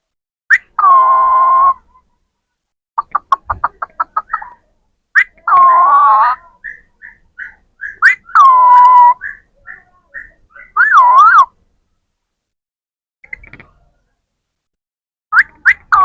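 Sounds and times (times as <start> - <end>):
parrot whistling: 5.2 - 11.5.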